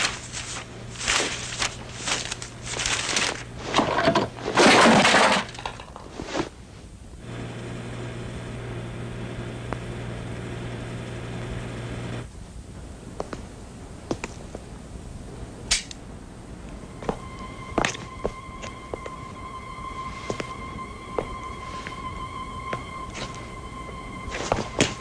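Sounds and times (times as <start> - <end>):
steady low hum: 0.0 - 25.0
loud crashing and shattering: 3.7 - 6.0.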